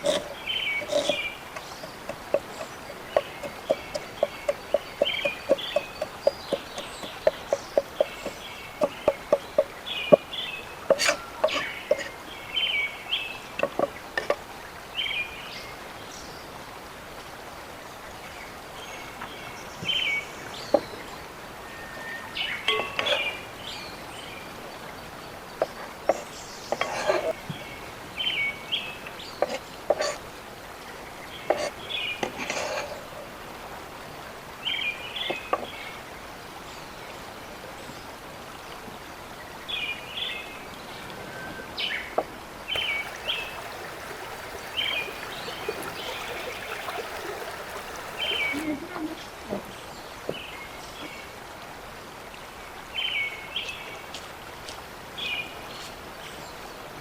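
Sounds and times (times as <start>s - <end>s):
birds chirping: 0.0s - 12.8s, 42.7s - 48.7s.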